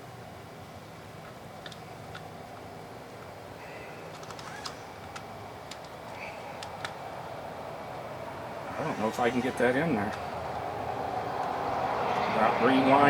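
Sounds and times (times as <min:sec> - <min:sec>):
steady background hum: 0:00.0 - 0:13.0
small parts clicking and tapping: 0:01.2 - 0:03.3, 0:04.1 - 0:07.0.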